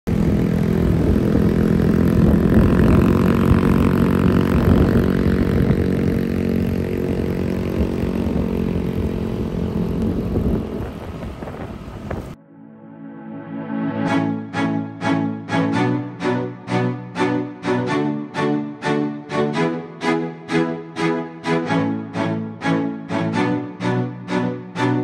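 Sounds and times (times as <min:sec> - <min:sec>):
vehicle engine running: 0:00.1 - 0:12.4.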